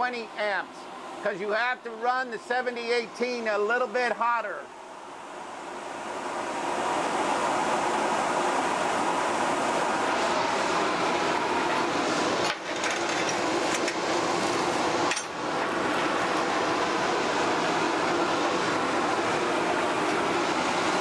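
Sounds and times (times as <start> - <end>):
shop machinery noise: 5.8 - 21.0.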